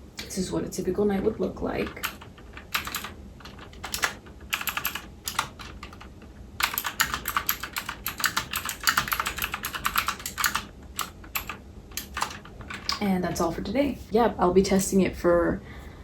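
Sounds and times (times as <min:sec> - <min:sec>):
clicky mechanical keyboard typing: 0:01.8 - 0:13.4.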